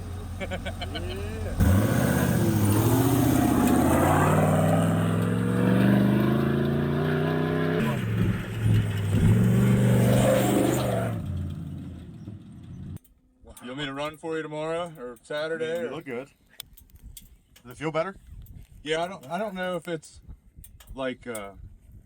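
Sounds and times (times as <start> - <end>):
off-road vehicle engine revving: 0.0 - 13.0.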